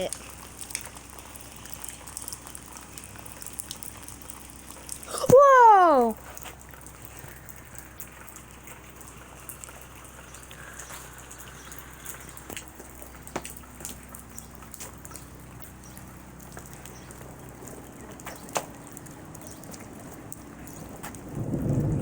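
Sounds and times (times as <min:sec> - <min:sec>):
raindrops dripping nearby: 0:00.0 - 0:22.0
steady rain falling: 0:00.0 - 0:22.0.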